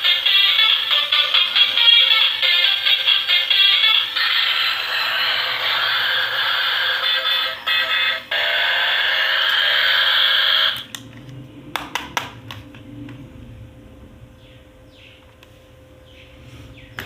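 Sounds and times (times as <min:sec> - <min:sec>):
electronic toy buzzing: 0:00.0 - 0:10.9.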